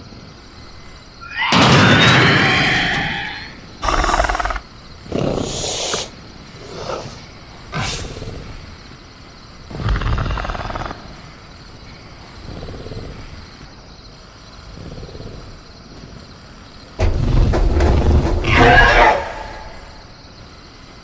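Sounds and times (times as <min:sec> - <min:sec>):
crickets chirping: 0:00.0 - 0:21.0
cage rattling: 0:17.0 - 0:20.0.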